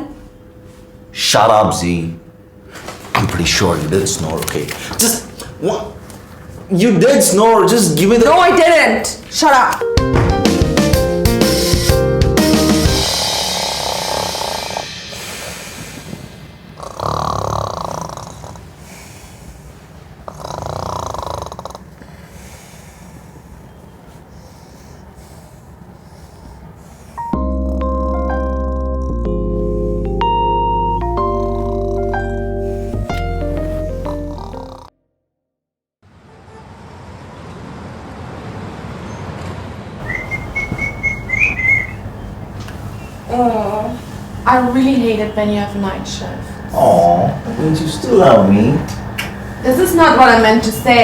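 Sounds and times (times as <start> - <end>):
background hiss: 10.8 - 27.4, 40.0 - 51.0
person snoring: 12.8 - 16.1, 16.8 - 19.1, 20.3 - 21.9, 31.1 - 33.1, 33.9 - 34.9, 46.7 - 47.5
high steady whistling tone: 40.0 - 43.3, 44.4 - 51.0.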